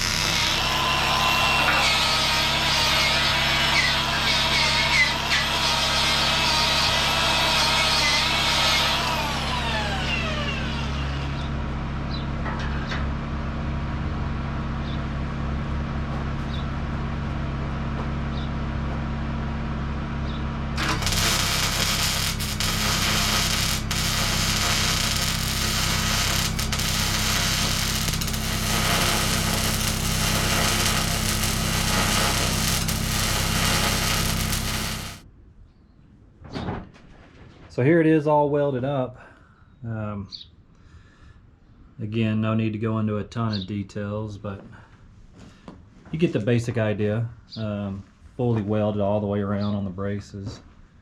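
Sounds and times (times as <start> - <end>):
sharp welding pops: 0.0 - 0.7, 20.8 - 35.2
arc welding crackling hiss: 0.0 - 9.8, 20.8 - 35.2
power tool spinning down: 0.0 - 11.6, 20.8 - 35.2
machine hum: 0.0 - 35.3.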